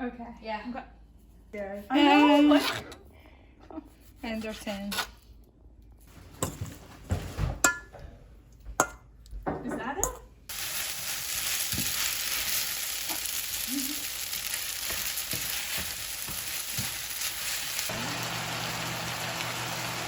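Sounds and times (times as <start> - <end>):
food sizzling in a frying pan: 10.5 - 20.0.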